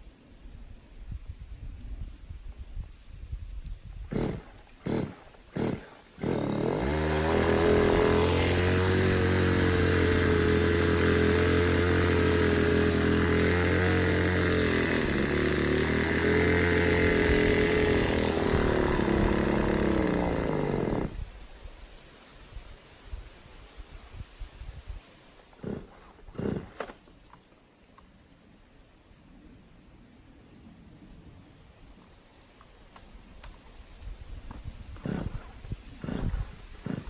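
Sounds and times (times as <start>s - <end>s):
chainsaw engine running: 4.1s - 21.2s, 25.6s - 27.0s, 34.9s - 37.0s
chainsaw starter cord pulls: 4.1s - 21.2s, 25.6s - 27.0s, 34.5s - 37.0s.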